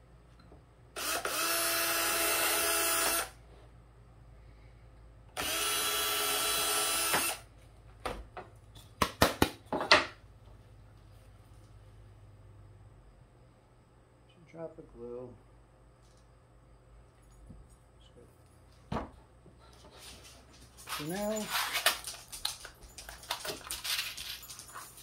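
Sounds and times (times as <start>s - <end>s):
power drill running: 1.0s - 3.4s, 5.4s - 7.4s.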